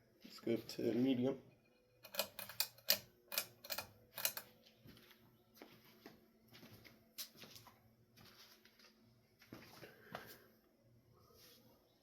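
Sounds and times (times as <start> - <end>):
pull chain rattling clicks: 2.0 - 4.5.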